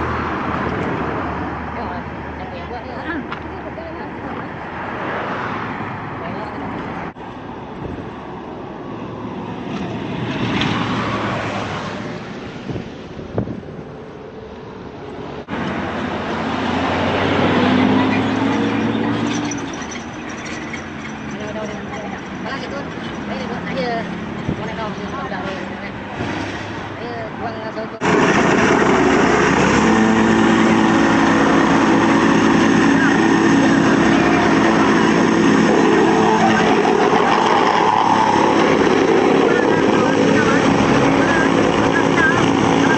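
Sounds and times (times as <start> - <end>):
heavy machinery engine noise: 0.0 - 42.9.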